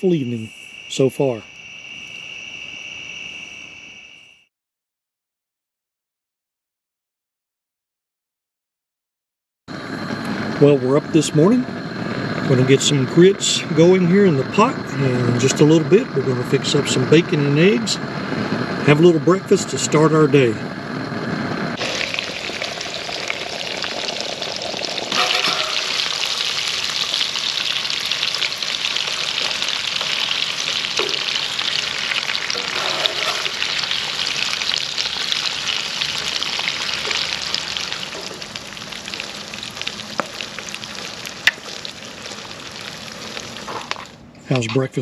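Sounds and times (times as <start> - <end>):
food sizzling in a pan: 21.8 - 44.1.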